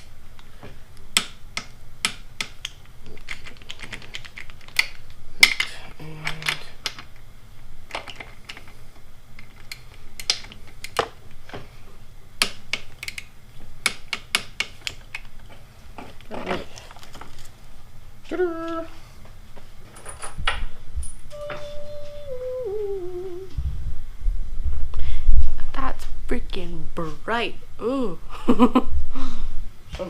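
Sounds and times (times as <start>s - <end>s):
brief low hum: 21.3s - 25.4s.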